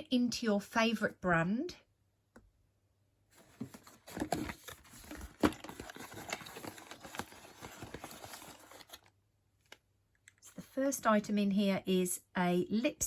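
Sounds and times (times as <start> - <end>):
cosmetic packaging rustling: 3.3 - 9.8.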